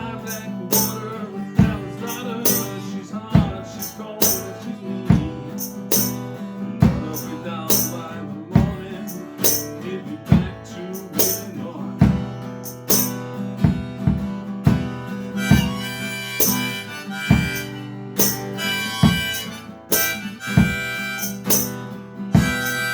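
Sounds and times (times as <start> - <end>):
guitar: 0.0 - 22.9
drum beat: 0.3 - 2.7, 3.4 - 8.0, 8.6 - 21.8, 22.4 - 22.9
harmonica: 15.2 - 22.9.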